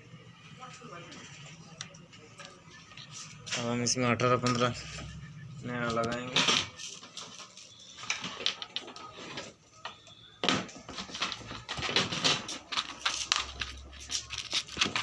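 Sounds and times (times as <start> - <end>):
small parts clicking and rustling: 5.9 - 15.0.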